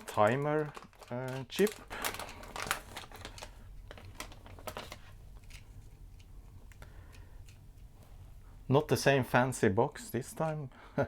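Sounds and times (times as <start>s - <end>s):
packaging clicks and rustling: 0.0s - 7.6s.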